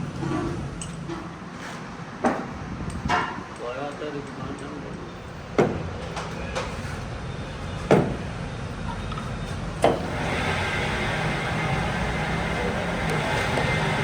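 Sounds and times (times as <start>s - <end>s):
low machine hum: 8.5s - 14.0s.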